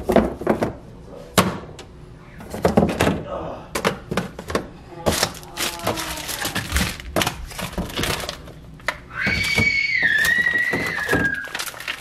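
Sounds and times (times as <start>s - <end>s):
containers knocking and clattering: 2.4s - 12.0s.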